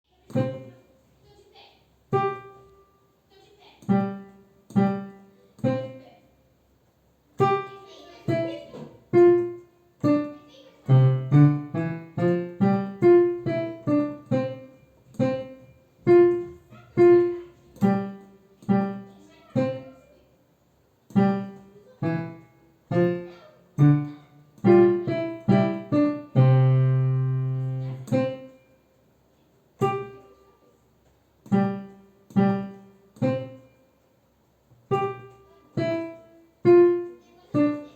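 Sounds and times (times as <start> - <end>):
piano tune: 2.1 - 2.8, 3.8 - 6.1, 7.4 - 20.1, 21.1 - 28.8, 31.5 - 33.8, 34.9 - 37.9.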